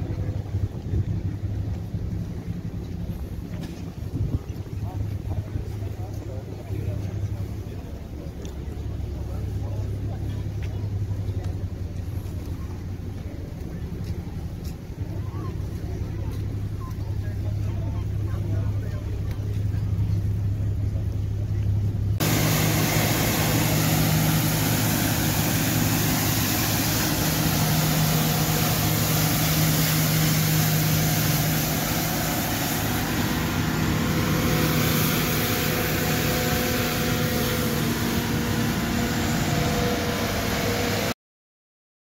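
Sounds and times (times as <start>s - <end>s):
motor engine humming: 0.0s - 41.2s
dense rushing noise: 22.2s - 41.2s.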